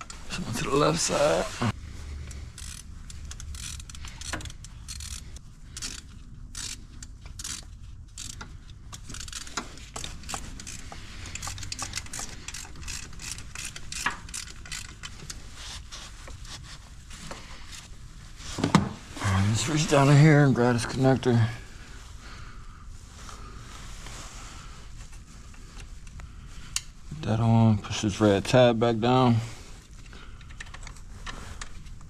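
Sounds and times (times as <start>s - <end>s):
ratchet wrench clicking: 2.2s - 15.4s.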